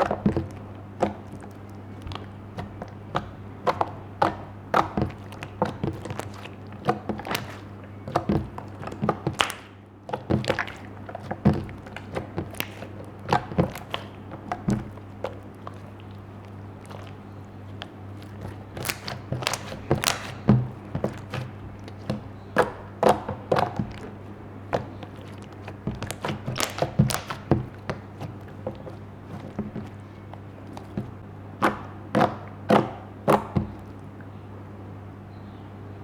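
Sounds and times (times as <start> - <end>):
low steady hum: 0.0 - 36.0
slime popping and clicking: 2.1 - 24.1.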